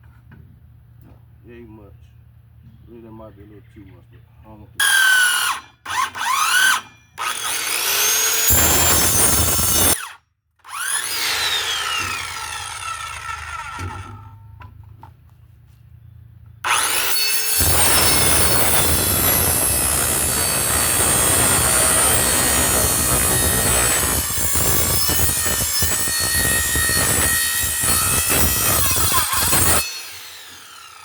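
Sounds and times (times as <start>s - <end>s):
power tool cutting wood: 4.8s - 14.4s, 16.6s - 31.0s.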